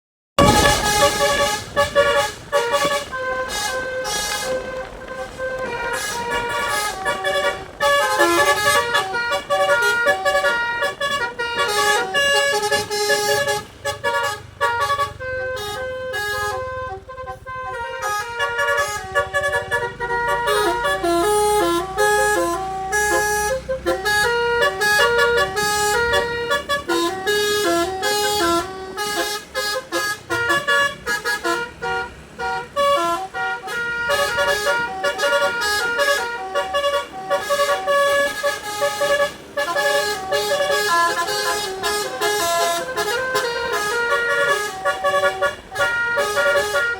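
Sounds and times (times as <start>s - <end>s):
low engine rumble: 0.4s - 46.9s
musical air horn playing tunes: 0.4s - 46.9s.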